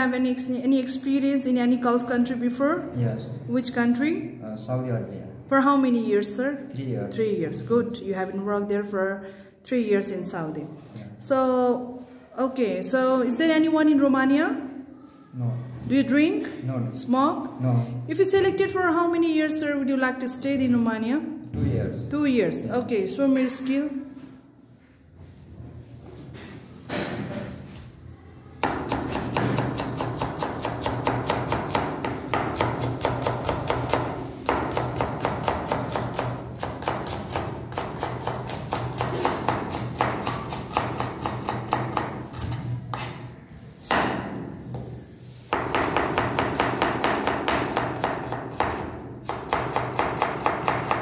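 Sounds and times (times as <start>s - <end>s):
knife chopping on cutting board: 28.6s - 43.2s, 45.5s - 51.0s.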